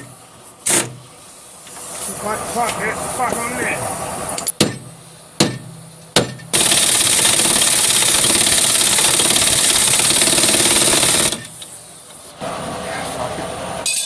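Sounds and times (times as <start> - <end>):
impact wrench hammering: 4.4 - 11.6.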